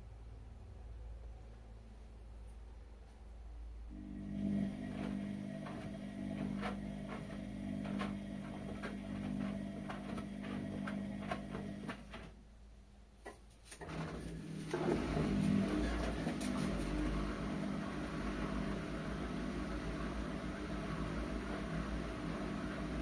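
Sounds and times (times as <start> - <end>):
washing machine motor humming: 3.9 - 12.5, 13.8 - 23.0.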